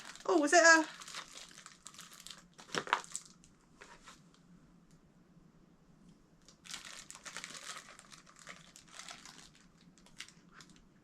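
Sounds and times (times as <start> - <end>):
packaging crinkling and rustling: 0.0 - 4.3, 6.4 - 11.0.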